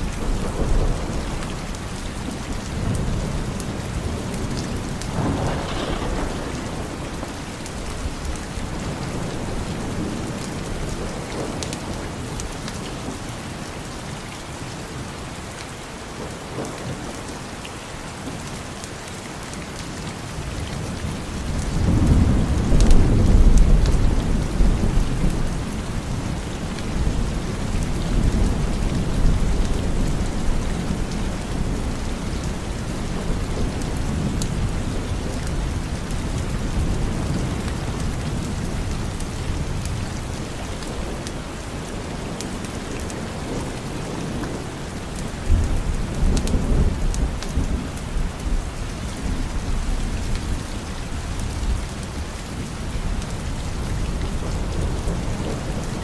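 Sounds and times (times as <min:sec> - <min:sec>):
rolling thunder: 0:00.0 - 0:12.1, 0:21.1 - 0:41.2
steady rain falling: 0:00.0 - 0:56.0.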